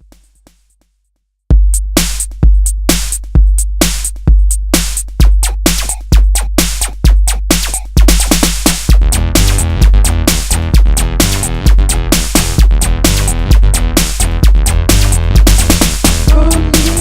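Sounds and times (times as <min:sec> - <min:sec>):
drum machine beat: 0:00.0 - 0:17.0
deep kick with sub-bass: 0:01.5 - 0:17.0
quick clicking percussion: 0:04.8 - 0:09.7.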